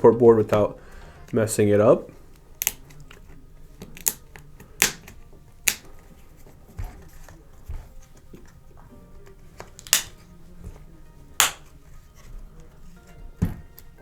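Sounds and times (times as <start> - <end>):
sharp plastic clicks: 2.4 - 6.0, 9.6 - 10.2, 11.4 - 11.7.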